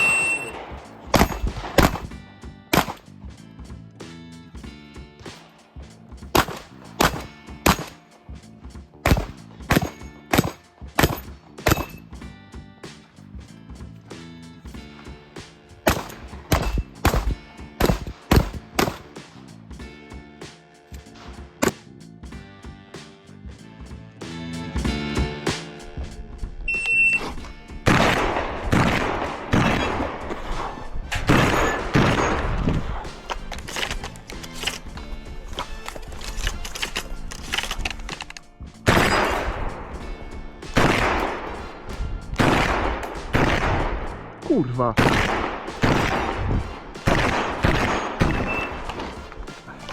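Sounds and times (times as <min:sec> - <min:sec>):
shotgun shots: 0:00.0 - 0:03.1, 0:06.3 - 0:08.0, 0:09.0 - 0:12.0, 0:15.8 - 0:19.1, 0:27.2 - 0:34.9, 0:38.9 - 0:44.3, 0:45.0 - 0:49.9
background music: 0:00.0 - 0:49.9.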